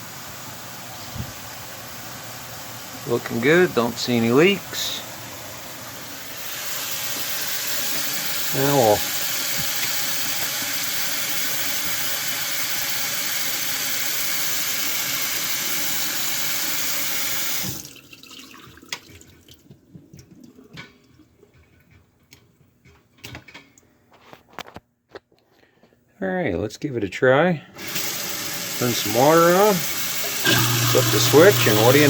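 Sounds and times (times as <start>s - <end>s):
faucet water running down drain: 5.8s - 21.2s, 27.8s - 32.0s.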